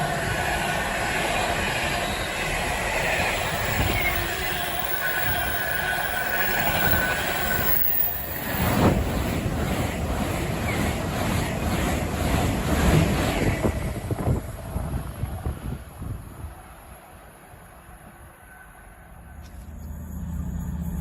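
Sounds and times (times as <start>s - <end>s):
diesel locomotive and wheels rumbling: 0.0s - 21.0s
high wheel squeal: 1.4s - 9.0s.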